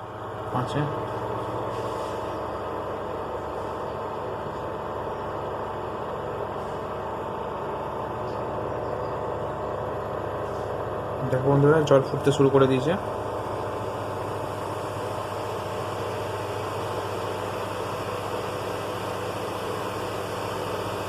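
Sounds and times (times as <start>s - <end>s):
faint hum: 0.0s - 19.2s
cooling fan whirring hiss: 0.0s - 21.0s.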